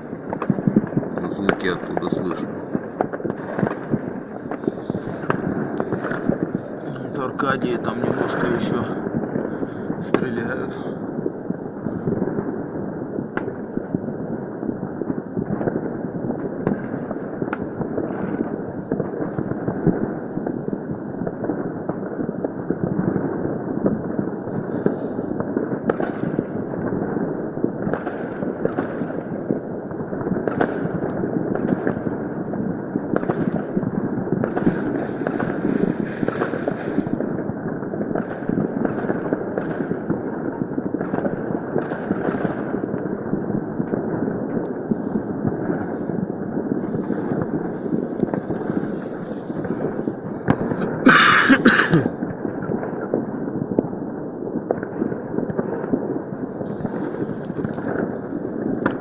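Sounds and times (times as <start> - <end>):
sharp firecracker pops: 0.0 - 12.6, 13.3 - 14.0, 15.0 - 20.6, 21.2 - 53.3, 54.6 - 59.0
distant fireworks crackling: 0.0 - 59.0
short hiss: 34.7 - 37.1, 56.6 - 57.6.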